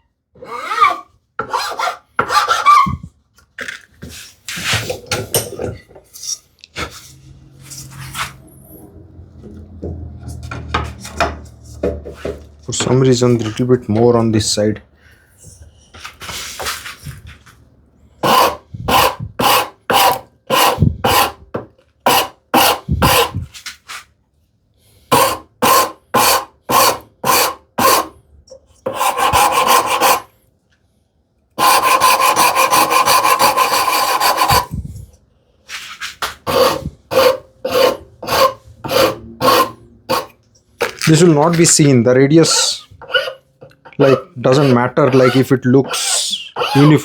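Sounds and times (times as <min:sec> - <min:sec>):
hand file rasping on wood: 0:00.4 - 0:03.0, 0:18.2 - 0:21.4, 0:22.1 - 0:23.5, 0:25.1 - 0:28.1, 0:28.9 - 0:30.3, 0:31.6 - 0:34.8, 0:36.3 - 0:40.4, 0:43.0 - 0:47.0.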